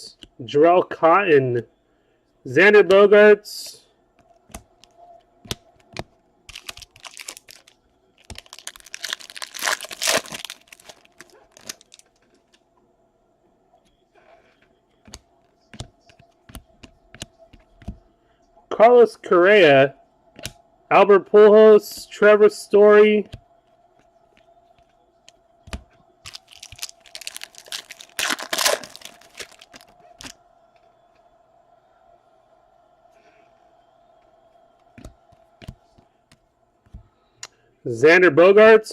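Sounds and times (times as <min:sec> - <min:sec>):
foil wrapper tearing and crinkling: 0:06.5 - 0:12.2, 0:26.3 - 0:30.3.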